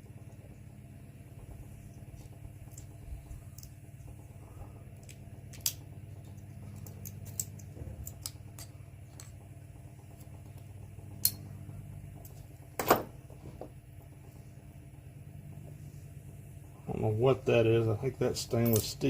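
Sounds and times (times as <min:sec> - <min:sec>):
steady low hum: 0:00.0 - 0:19.0
metal parts clicking and clinking: 0:05.0 - 0:09.4, 0:18.6 - 0:19.0.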